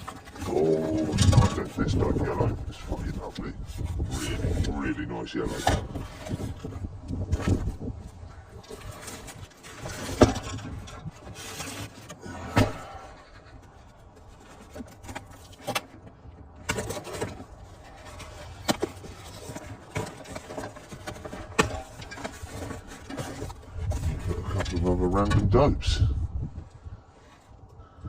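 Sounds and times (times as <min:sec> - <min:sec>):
knocks and clicks of packaging: 0:08.5 - 0:24.8.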